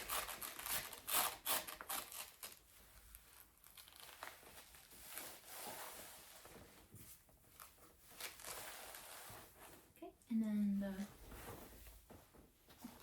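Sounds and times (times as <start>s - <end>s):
scratchy velcro rasps: 0.0s - 2.6s
velcro wrap rustling and crinkling: 0.0s - 10.0s.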